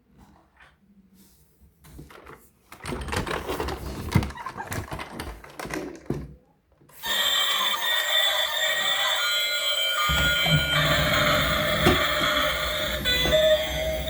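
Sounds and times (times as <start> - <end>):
toys and packaging rattling: 1.9 - 8.1
electronic toy sound: 7.0 - 14.0.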